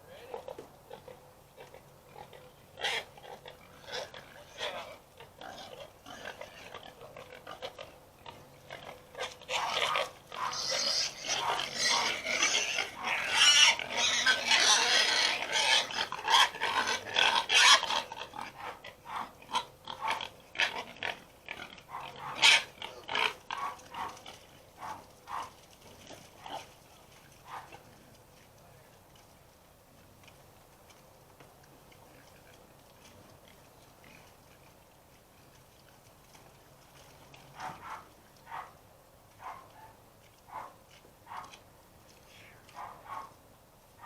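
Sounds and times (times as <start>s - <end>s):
pigs grunting: 0.0s - 28.2s, 37.4s - 38.7s
pigs squealing: 0.2s - 25.5s.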